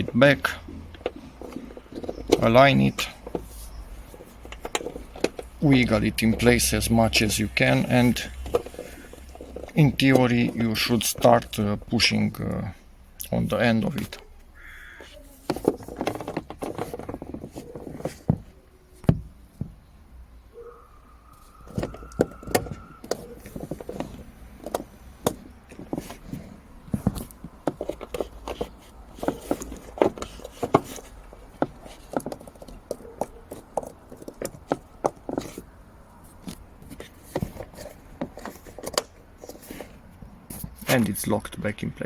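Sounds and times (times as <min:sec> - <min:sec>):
plastic connector clicks and knocks: 0:21.7 - 0:35.7.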